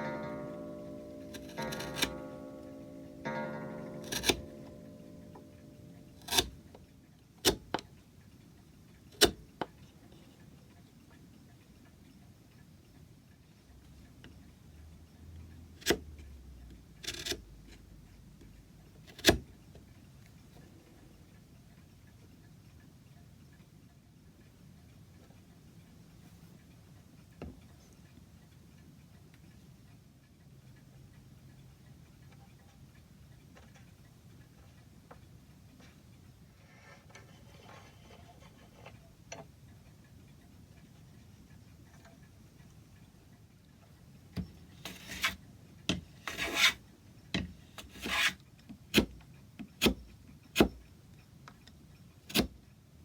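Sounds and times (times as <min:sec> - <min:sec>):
clock ticking faintly: 0:00.0 - 0:53.0
low room hum: 0:00.0 - 0:53.0
scrape or rustle of tools: 0:36.6 - 0:39.0, 0:46.2 - 0:46.8, 0:47.8 - 0:48.4.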